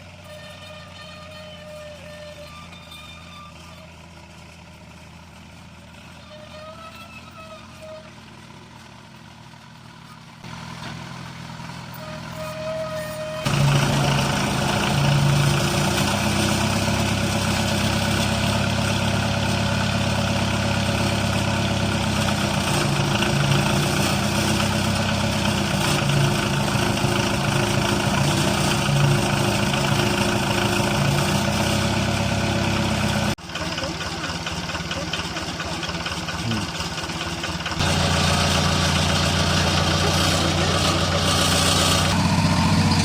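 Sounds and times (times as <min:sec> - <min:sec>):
excavator diesel engine idling: 0:00.0 - 0:43.0.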